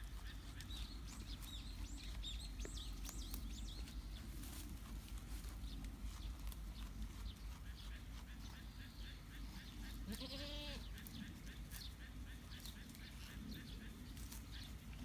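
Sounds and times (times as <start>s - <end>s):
low outdoor rumble: 0.0s - 15.0s
small birds chirping: 0.0s - 15.0s.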